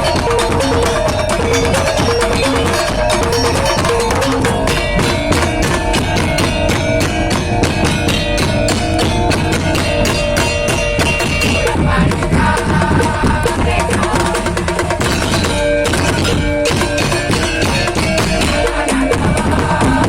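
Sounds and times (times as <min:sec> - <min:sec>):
melodic line: 0:00.0 - 0:11.8
percussion ensemble fast beat: 0:00.0 - 0:20.0.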